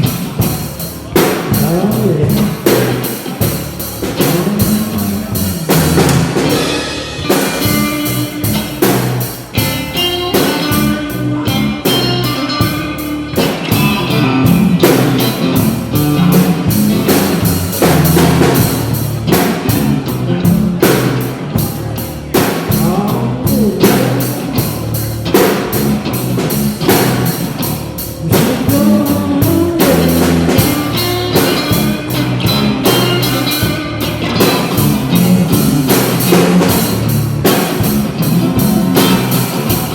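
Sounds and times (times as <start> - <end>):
drum kit beat: 0.0 - 39.9
rock band playing: 0.0 - 39.9.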